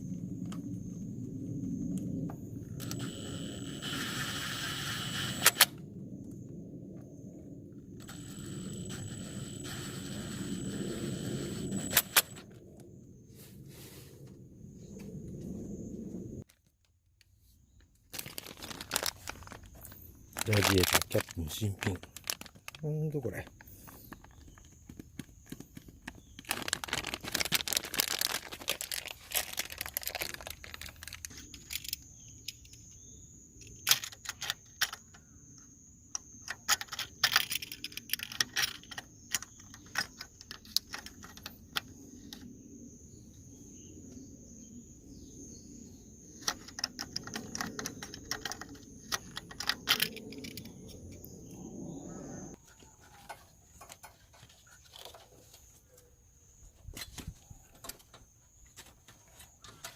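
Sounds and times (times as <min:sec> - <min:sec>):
faint high whine: 0:00.0 - 0:16.4
low hum: 0:00.0 - 0:16.4, 0:47.3 - 0:52.6
rustling of packaging: 0:18.0 - 0:31.9.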